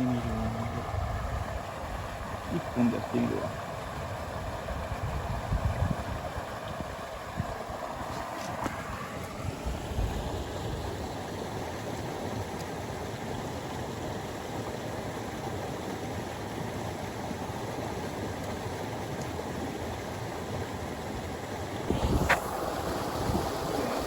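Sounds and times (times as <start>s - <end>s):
river rushing: 6.3s - 24.0s.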